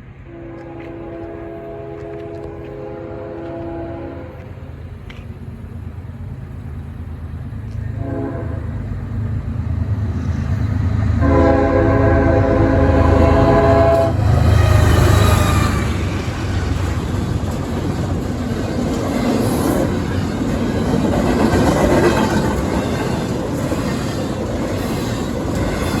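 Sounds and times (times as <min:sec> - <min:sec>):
train wheels rushing: 0:00.0 - 0:26.0
locomotive horn blasts: 0:00.2 - 0:04.6, 0:08.0 - 0:08.8, 0:11.2 - 0:15.9.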